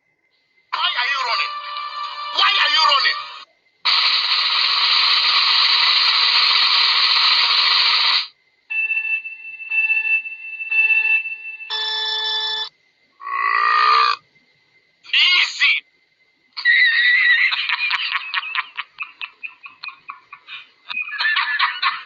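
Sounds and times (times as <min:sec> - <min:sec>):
loud hissing blast: 0:03.8 - 0:08.4.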